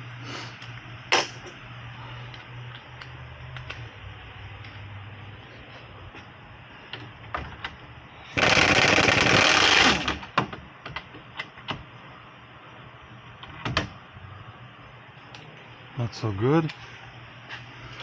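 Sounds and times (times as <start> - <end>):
power wrench burst: 8.4 - 10.2.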